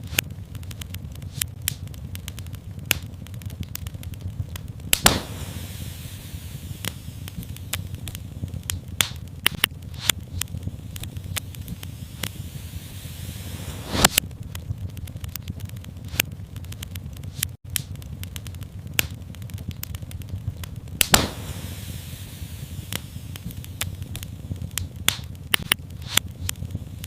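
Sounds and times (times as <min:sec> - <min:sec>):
fire crackling and popping: 0:00.0 - 0:27.0
low steady fire rumble: 0:00.0 - 0:27.0
brief hiss: 0:11.7 - 0:14.2, 0:21.1 - 0:23.6.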